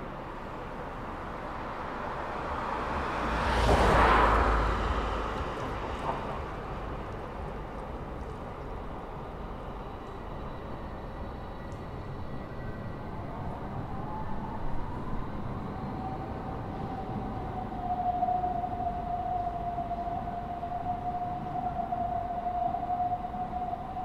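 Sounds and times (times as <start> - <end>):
street background noise: 0.0 - 24.0
vehicle passing by: 1.9 - 7.7.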